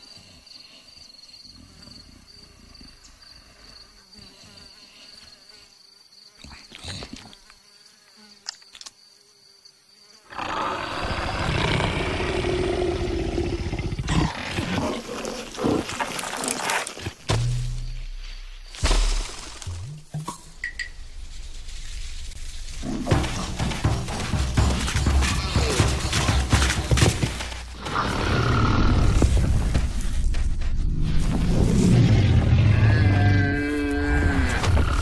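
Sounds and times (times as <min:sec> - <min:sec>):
rough animal roar: 0:10.3 - 0:17.0, 0:27.7 - 0:29.5, 0:31.8 - 0:35.0.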